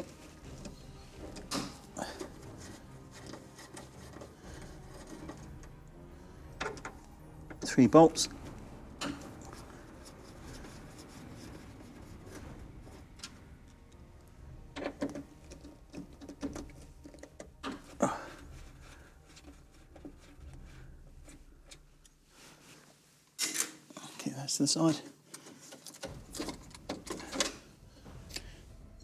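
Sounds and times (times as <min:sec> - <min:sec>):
hand tools clicking and knocking: 0:00.0 - 0:05.9, 0:06.6 - 0:14.0, 0:14.7 - 0:20.6, 0:25.3 - 0:28.4
low steady hum: 0:00.0 - 0:22.6, 0:26.1 - 0:29.0.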